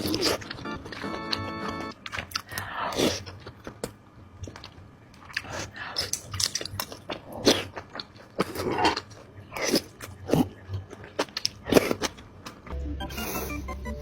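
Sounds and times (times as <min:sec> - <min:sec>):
biting and chewing food: 0:00.0 - 0:12.7
music: 0:00.5 - 0:01.9, 0:12.7 - 0:14.0.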